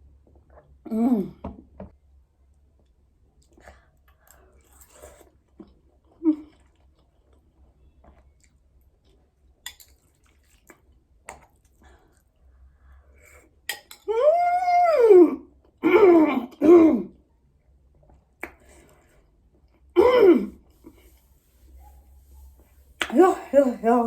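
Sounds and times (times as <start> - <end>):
person chewing: 3.4 - 12.3.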